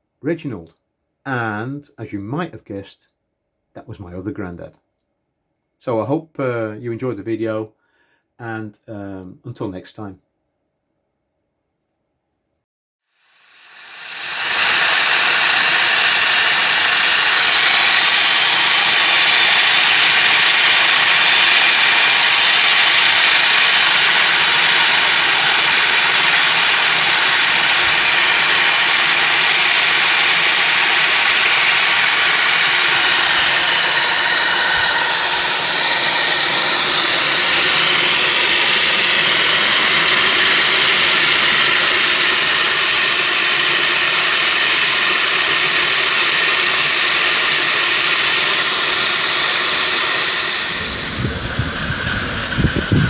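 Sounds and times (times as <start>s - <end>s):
steam hissing: 13.2s - 53.0s
steam locomotive clatter: 14.2s - 53.0s.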